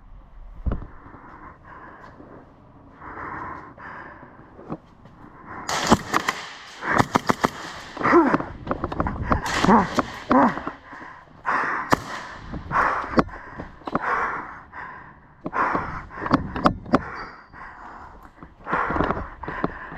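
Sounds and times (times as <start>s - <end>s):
heavy breathing and grunts: 0.8s - 19.9s
airsoft guns firing: 5.7s - 13.4s.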